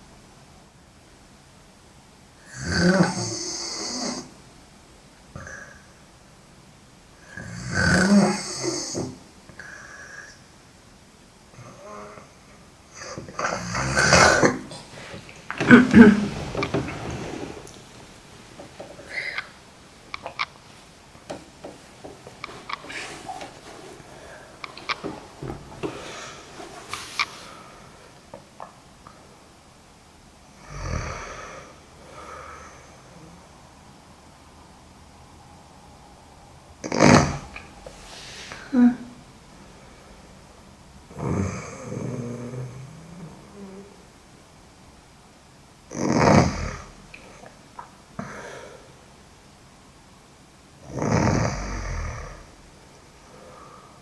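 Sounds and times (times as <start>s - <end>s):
woman snoring: 2.5s - 4.3s, 7.3s - 10.4s, 13.0s - 19.5s, 30.6s - 33.4s, 36.8s - 39.2s, 41.1s - 44.0s, 45.9s - 47.0s, 50.8s - 52.6s
soft breath: 13.0s - 19.8s, 22.2s - 28.2s, 37.4s - 40.5s, 48.2s - 49.1s, 53.2s - 54.0s.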